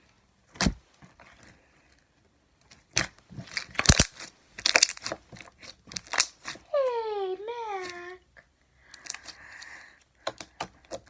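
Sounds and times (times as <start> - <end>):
slime squeezed in plastic bag: 3.4 - 6.6.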